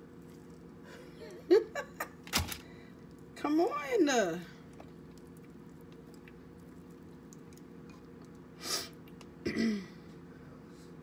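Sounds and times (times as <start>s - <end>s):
steady low hum: 0.0s - 11.0s
noisy breath or sniff: 8.6s - 9.0s
woman clearing her throat: 9.4s - 10.0s.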